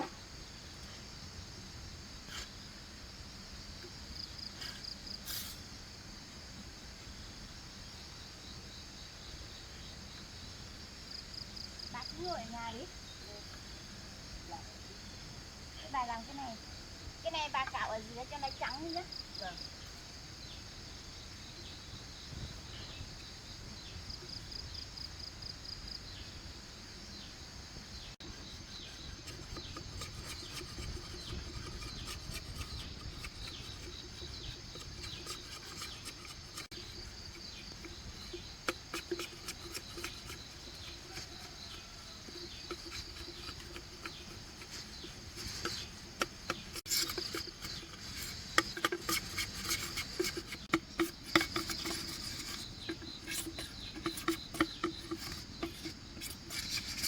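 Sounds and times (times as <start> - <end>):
insects chirring: 0.0 - 57.0
hand tools scraping bamboo: 2.3 - 2.6, 28.2 - 57.0.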